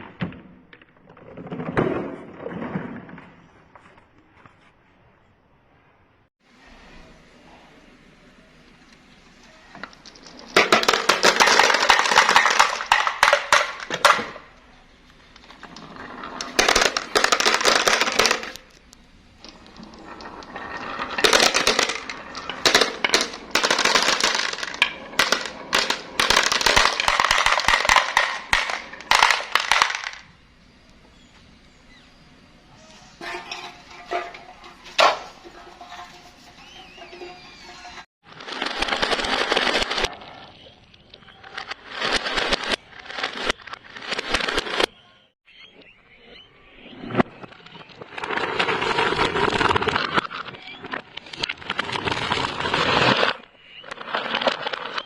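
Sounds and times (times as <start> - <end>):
marbles clattering down a marble run: 9.8 - 14.6, 15.3 - 30.4, 33.1 - 40.1.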